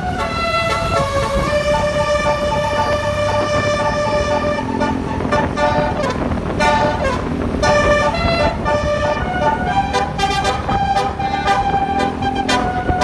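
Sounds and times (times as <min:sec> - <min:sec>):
multi-tone bus air horn tune: 0:00.0 - 0:13.0.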